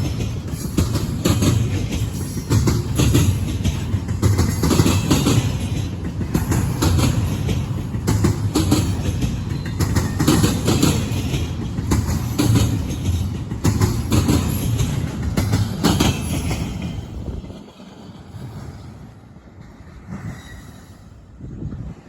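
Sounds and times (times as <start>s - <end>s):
freight train wheels clacking: 0.0s - 21.2s.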